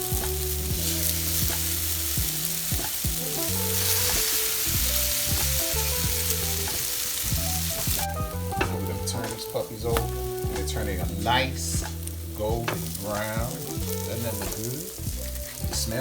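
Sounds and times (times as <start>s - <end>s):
french toast sizzling on griddle: 0.0s - 16.0s.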